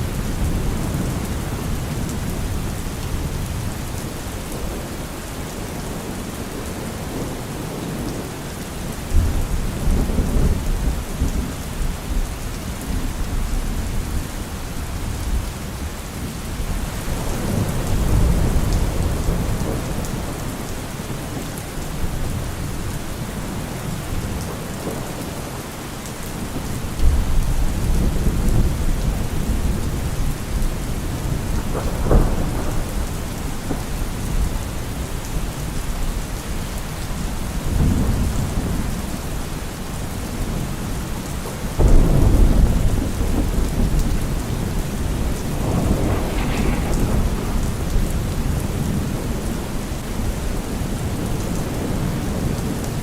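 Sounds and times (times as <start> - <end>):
steady rain: 0.0 - 53.0
thunder rumbling: 26.6 - 35.8, 41.5 - 53.0.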